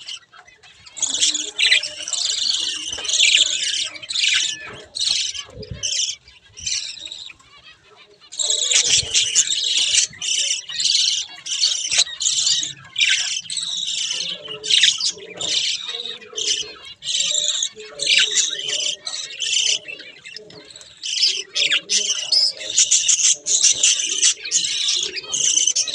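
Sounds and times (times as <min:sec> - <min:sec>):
budgerigars chirping and chattering: 0:00.0 - 0:25.9.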